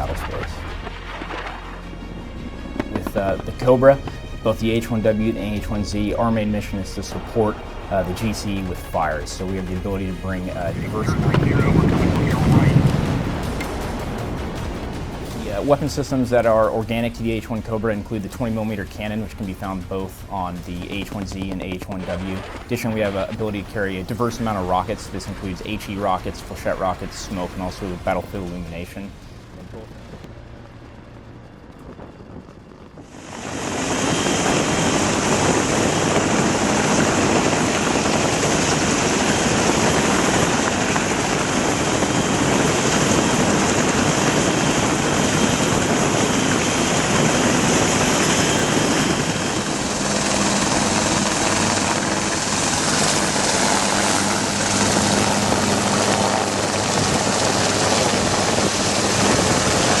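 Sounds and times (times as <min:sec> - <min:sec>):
helicopter running: 0:00.0 - 1:00.0.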